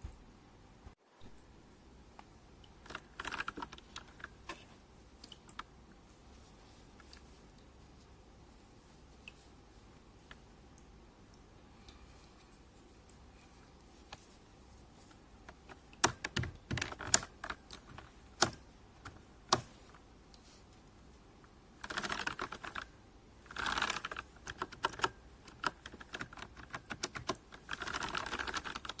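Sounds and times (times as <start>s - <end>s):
mechanical keyboard typing: 2.8s - 4.6s, 15.6s - 19.7s, 21.8s - 29.0s.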